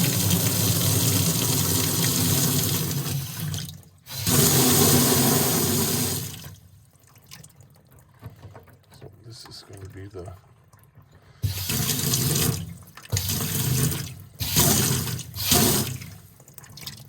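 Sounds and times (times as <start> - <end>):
water running from faucet: 0.0 - 6.6, 11.4 - 17.0
air spitting through pipe: 11.4 - 12.0, 14.4 - 16.1.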